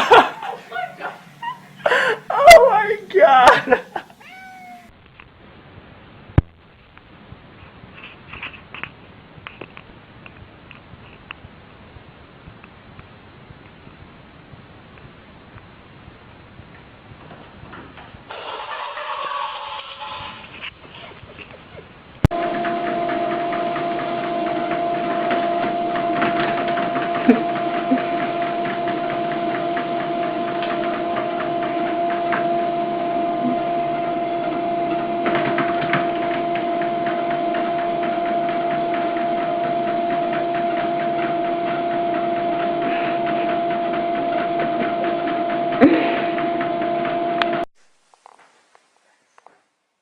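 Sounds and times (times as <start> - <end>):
small machine humming and clattering: 0.0 - 2.7, 21.4 - 47.7.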